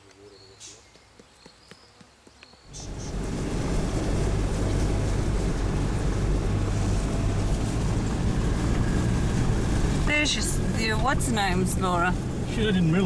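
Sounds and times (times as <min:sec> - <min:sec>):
road and tyre noise: 0:02.6 - 0:13.0
engine drone: 0:02.7 - 0:13.0.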